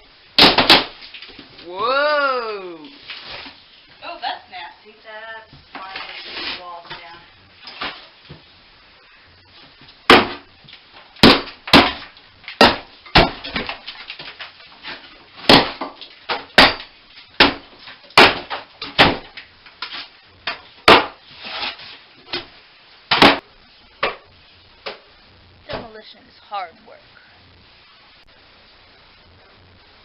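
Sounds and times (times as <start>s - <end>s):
hammer striking wall: 0.4s - 1.0s, 10.1s - 10.5s, 11.2s - 13.8s, 15.4s - 19.3s, 20.4s - 21.2s.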